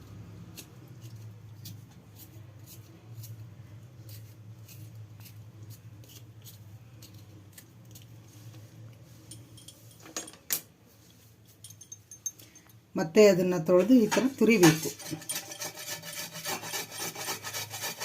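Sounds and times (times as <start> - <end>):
scraping clicks of ginger peeling: 0.5 - 3.4, 4.0 - 8.6.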